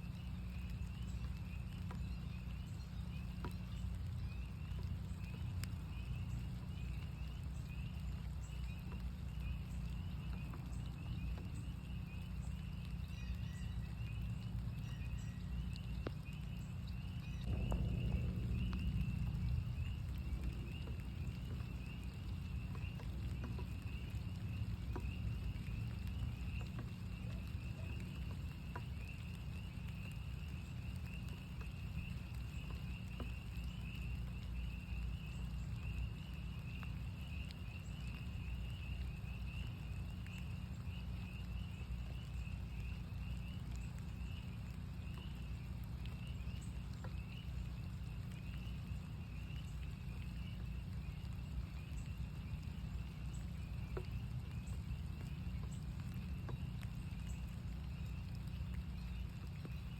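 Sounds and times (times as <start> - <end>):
frogs peeping: 0.0 - 59.9
rain drips: 0.0 - 59.9
low rumble: 0.1 - 36.4
low rush: 17.4 - 24.5.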